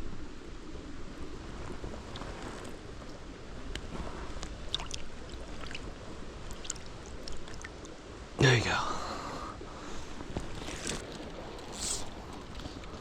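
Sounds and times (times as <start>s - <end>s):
creek water running: 1.3s - 13.0s
small clicks and splashes: 2.0s - 8.0s, 10.3s - 13.0s.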